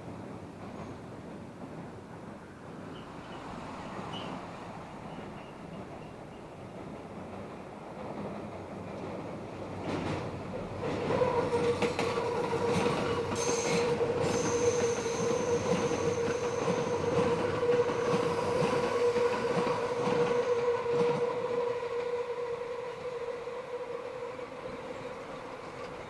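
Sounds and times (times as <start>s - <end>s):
train wheels squealing: 0.6s - 1.2s, 2.4s - 7.0s, 10.8s - 26.0s
shrill high-pitched wheel squeal: 11.3s - 26.0s.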